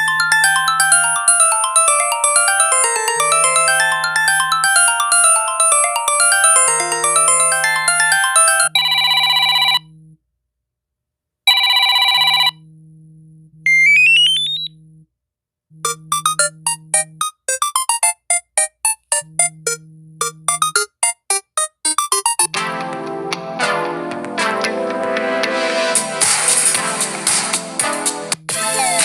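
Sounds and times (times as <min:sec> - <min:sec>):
phone ringtones: 0:00.0 - 0:09.9, 0:11.5 - 0:12.6, 0:13.7 - 0:14.8, 0:15.8 - 0:22.6.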